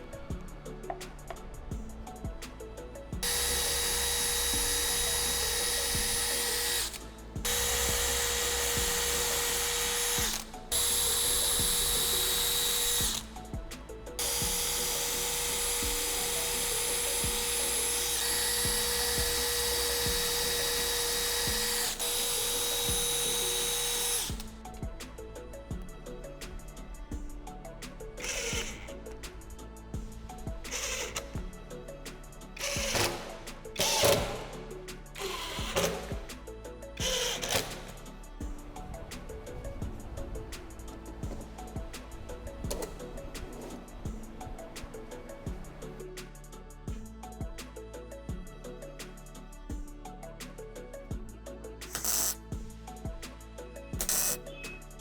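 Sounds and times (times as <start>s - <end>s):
power tool motor whine: 3.2s - 13.3s, 14.2s - 24.5s, 28.2s - 28.9s, 30.6s - 31.4s, 32.6s - 34.6s, 35.2s - 36.3s, 37.0s - 38.0s, 51.9s - 52.4s.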